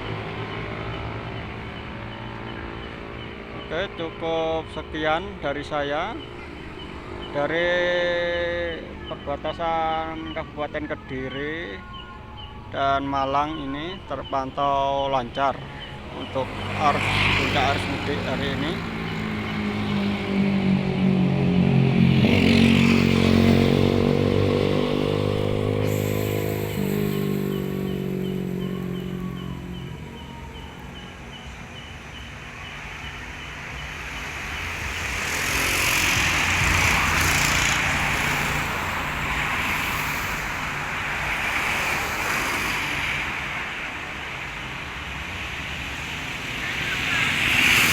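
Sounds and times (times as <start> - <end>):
vehicle engine running close by: 16.3 - 31.1, 33.0 - 42.0
tyres hissing on road: 22.2 - 30.0, 31.9 - 47.9.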